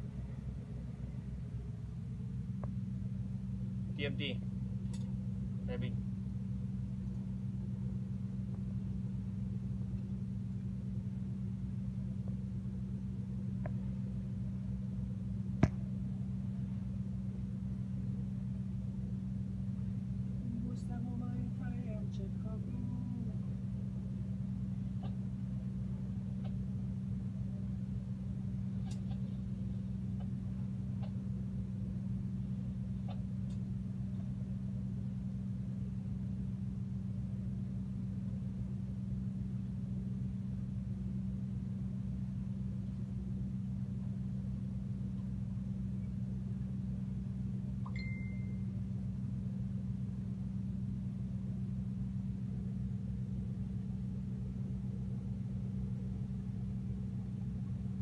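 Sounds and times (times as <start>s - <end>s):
boat engine droning: 0.0s - 49.0s
brief high tone: 47.9s - 48.7s.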